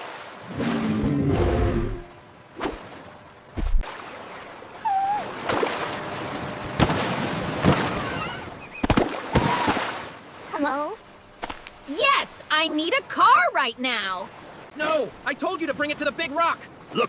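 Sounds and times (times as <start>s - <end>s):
sharp splashes: 0.0s - 10.6s
sea water splashing: 0.0s - 11.8s.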